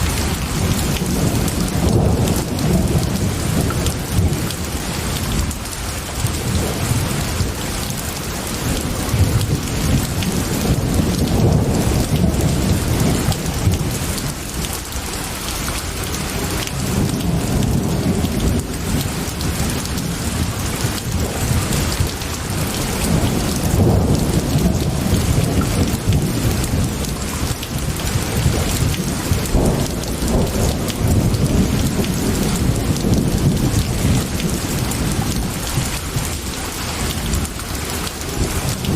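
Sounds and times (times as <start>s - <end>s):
rolling thunder: 0.0s - 5.6s, 6.2s - 14.7s, 16.1s - 38.9s
heavy rain hissing: 0.0s - 38.9s.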